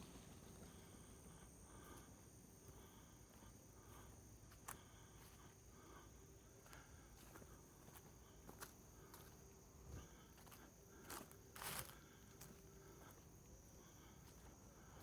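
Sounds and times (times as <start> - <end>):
steady high whine: 0.0 - 3.1.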